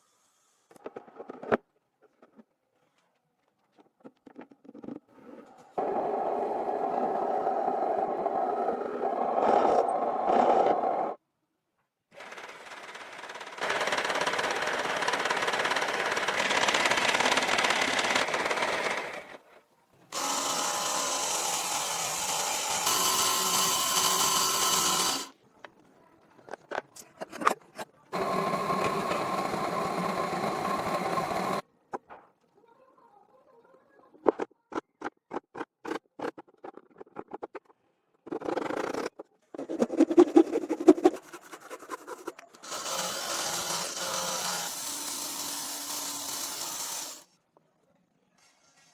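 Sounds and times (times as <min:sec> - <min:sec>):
power tool working wood: 0:20.2 - 0:25.3, 0:28.2 - 0:31.6, 0:42.6 - 0:47.2.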